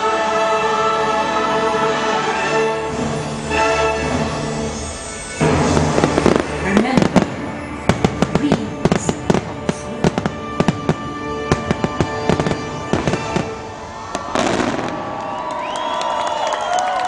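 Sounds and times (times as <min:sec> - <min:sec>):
orchestral music: 0:00.0 - 0:14.9
fireworks bursts and crackles: 0:02.9 - 0:17.0
crowd cheering: 0:12.4 - 0:17.0
gliding whistles: 0:15.2 - 0:17.0.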